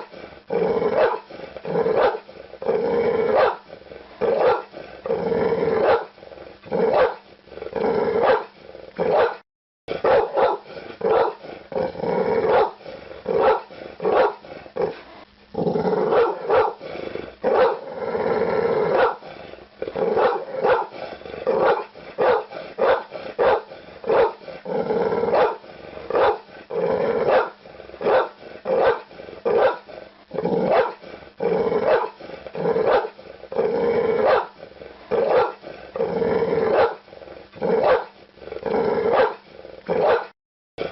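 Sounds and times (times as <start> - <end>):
dog barking: 1.0 - 1.3, 2.0 - 2.2, 3.3 - 3.6, 4.3 - 4.7, 5.8 - 6.1, 6.9 - 7.2, 8.2 - 8.5, 9.1 - 9.4, 10.0 - 11.4, 12.5 - 12.8, 13.4 - 14.4, 16.1 - 16.8, 17.5 - 17.8, 18.9 - 19.2, 20.2 - 20.9, 21.6 - 24.4, 25.3 - 26.4, 27.3 - 29.9, 30.7 - 31.0, 31.9 - 32.2, 32.8 - 33.2, 34.2 - 34.6, 35.2 - 35.6, 36.7 - 37.0, 37.8 - 38.2, 39.1 - 39.4, 40.0 - 40.3.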